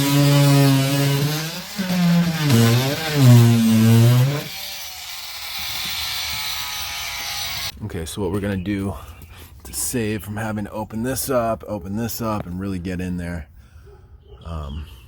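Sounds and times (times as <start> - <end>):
power tool motor under load: 0.0 - 7.7.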